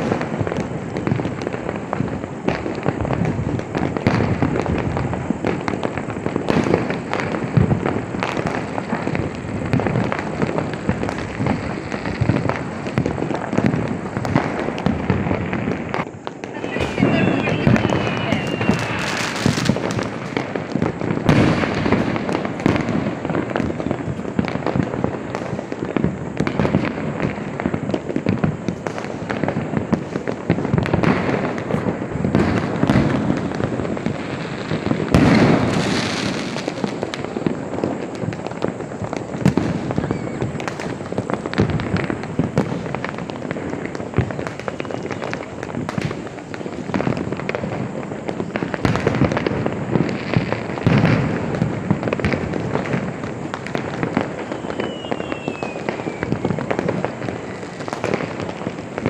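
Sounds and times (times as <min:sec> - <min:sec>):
fireworks crackling and banging: 0:00.0 - 0:59.0.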